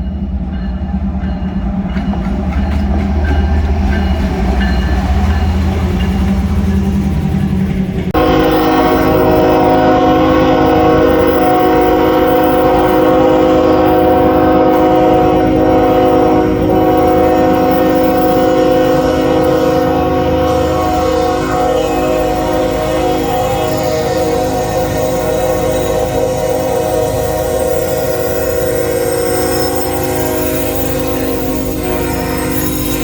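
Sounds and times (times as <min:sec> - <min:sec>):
low rumble of train: 0:00.0 - 0:33.0
locomotive air horn chord: 0:08.2 - 0:33.0.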